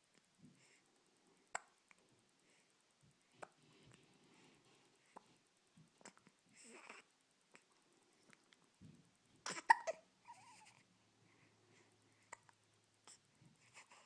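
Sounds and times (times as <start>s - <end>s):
person hiccuping: 9.5s - 10.0s.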